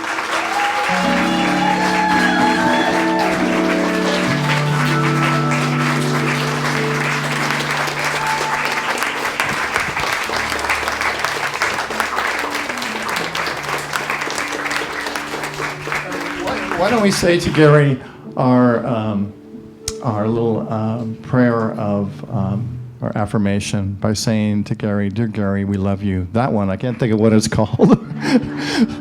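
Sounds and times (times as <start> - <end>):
congregation applauding: 0.0 - 18.2
instrumental music with held chords: 0.0 - 23.0.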